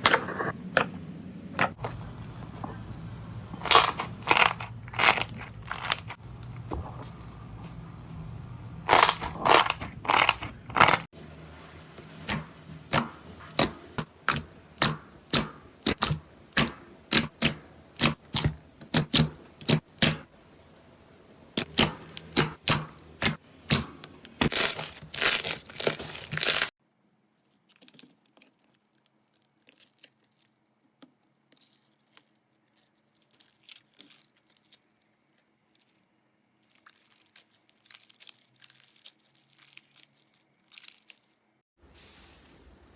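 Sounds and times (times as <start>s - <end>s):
slime crackling and crunching: 3.6s - 6.2s, 8.9s - 11.1s, 21.6s - 26.8s, 27.5s - 30.7s, 31.5s - 41.6s
faint crinkling: 3.6s - 8.1s
sharp slime pops: 12.3s - 20.3s.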